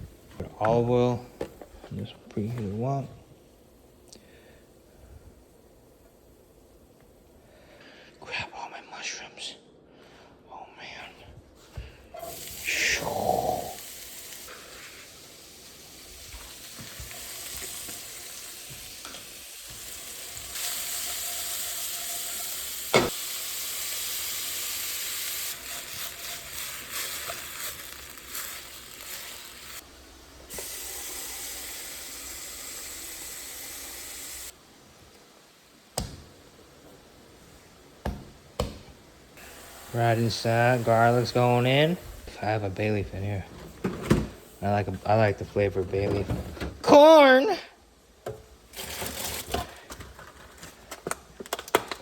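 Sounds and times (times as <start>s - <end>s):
mushrooms sizzling in hot oil: 1.6s - 7.0s, 12.2s - 43.4s.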